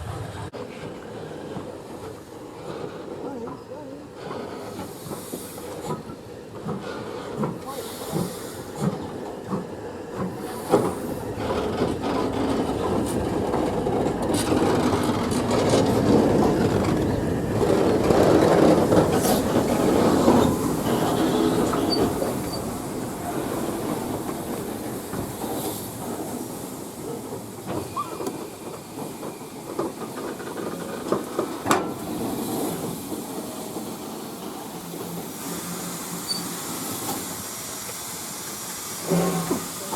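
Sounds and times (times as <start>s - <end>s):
train wheels clicking over rail joints: 0.0s - 39.9s
steam hiss: 4.4s - 12.4s, 17.3s - 39.9s.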